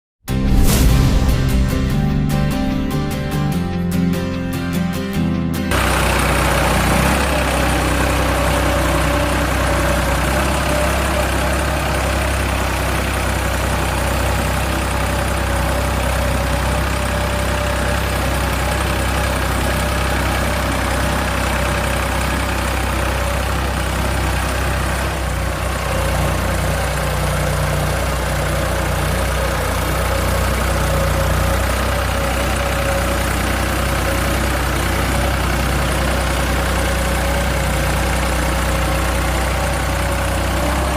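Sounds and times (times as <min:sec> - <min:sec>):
engine idling: 0:05.7 - 0:40.9.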